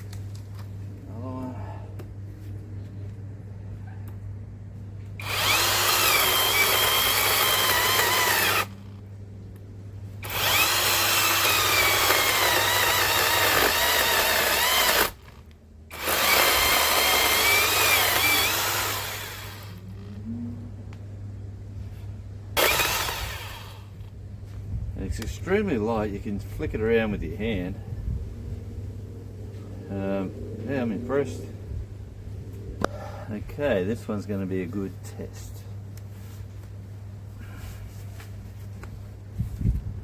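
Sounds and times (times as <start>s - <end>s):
electric chainsaw cutting wood: 5.2s - 9.0s, 10.2s - 20.1s, 22.6s - 24.1s.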